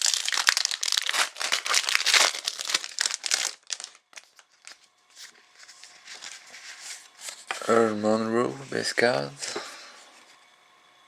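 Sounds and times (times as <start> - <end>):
wrapper crinkling: 0.0 - 7.7.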